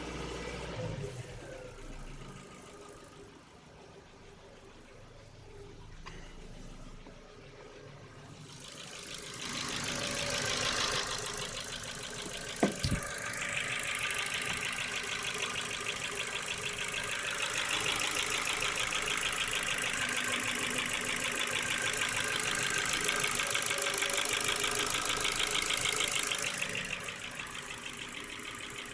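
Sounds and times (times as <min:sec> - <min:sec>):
engine running with chattering tick: 0:00.0 - 0:28.9
sharp engine knock: 0:12.3 - 0:13.1.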